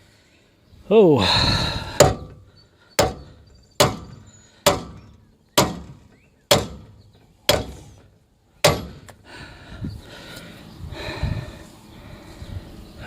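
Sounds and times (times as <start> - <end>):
hammer striking metal: 2.0 - 2.4, 3.0 - 7.9, 8.6 - 9.1.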